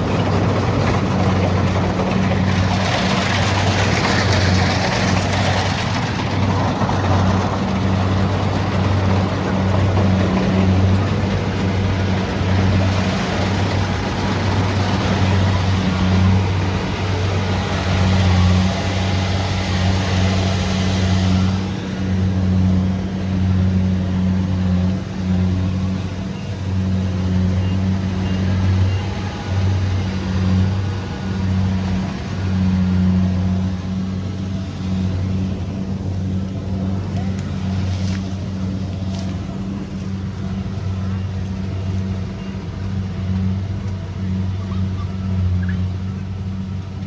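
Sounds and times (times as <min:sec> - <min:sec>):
combine harvester engine hum: 0:00.0 - 0:47.0
machinery rushing noise: 0:00.0 - 0:47.0.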